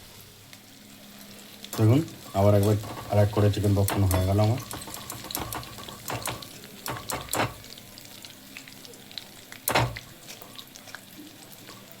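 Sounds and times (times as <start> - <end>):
chicken deep-frying in hot oil: 0.0 - 12.0
sharp knocks: 3.9 - 7.7, 9.7 - 10.0.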